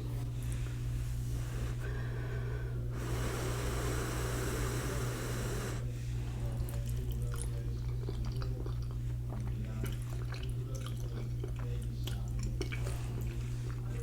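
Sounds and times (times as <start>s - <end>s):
steady low hum: 0.0s - 14.0s
long airy mouth sound: 1.0s - 5.9s.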